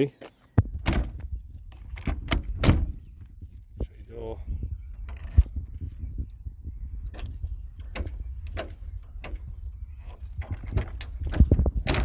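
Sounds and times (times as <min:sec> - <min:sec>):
keys jangling in a door lock: 0:05.0 - 0:06.4, 0:07.0 - 0:12.0.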